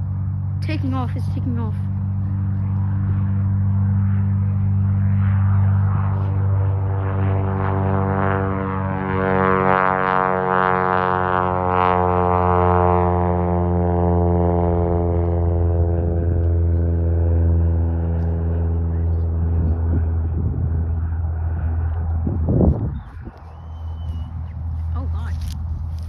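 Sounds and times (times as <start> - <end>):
propeller airplane taking off: 0.0 - 26.0
steady low hum: 0.0 - 26.0.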